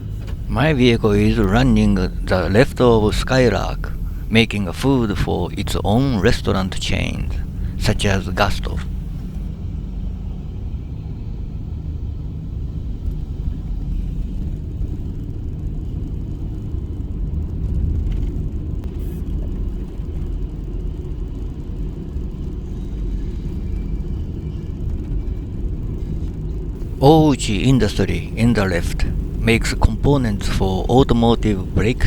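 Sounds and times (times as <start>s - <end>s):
car engine and tyres rumbling: 0.0s - 32.0s.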